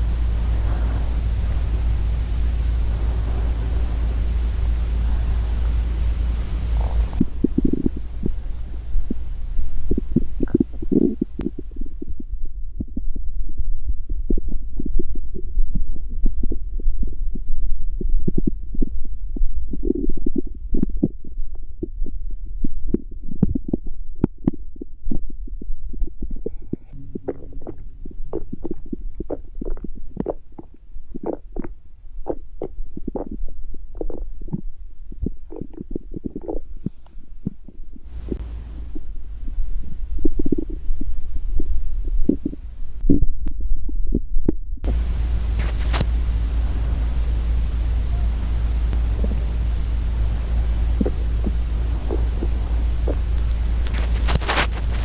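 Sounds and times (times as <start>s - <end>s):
steady low hum: 0.0s - 12.2s, 38.1s - 43.0s, 44.8s - 55.0s.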